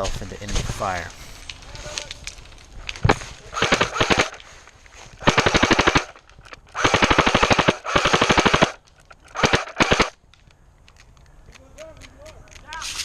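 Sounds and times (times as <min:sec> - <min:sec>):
rifle firing rapid bursts: 0:03.5 - 0:04.4, 0:05.2 - 0:10.2.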